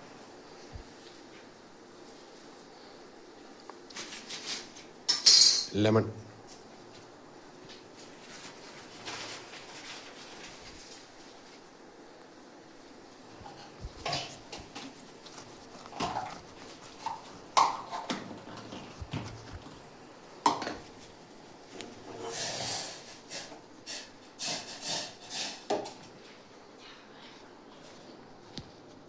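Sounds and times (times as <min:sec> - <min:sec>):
utensils and dishes knocking and clinking: 0:05.1 - 0:05.8, 0:13.4 - 0:15.0, 0:15.9 - 0:19.5, 0:20.4 - 0:20.9.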